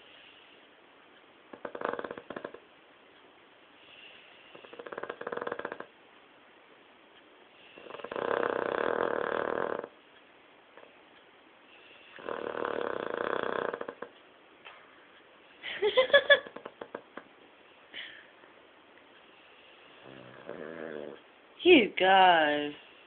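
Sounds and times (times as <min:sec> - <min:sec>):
dog snoring: 0:01.5 - 0:02.7, 0:03.8 - 0:06.0, 0:07.6 - 0:10.0, 0:11.7 - 0:14.2, 0:16.4 - 0:17.2, 0:19.4 - 0:21.3.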